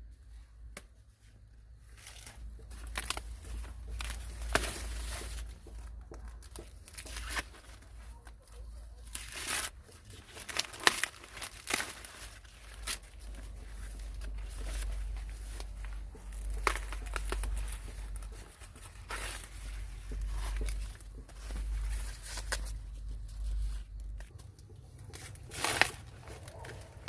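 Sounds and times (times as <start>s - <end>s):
dry plant material rustling: 0.1s - 27.0s
sharp crackle: 1.8s - 27.0s
deep steady rumble: 10.2s - 27.0s.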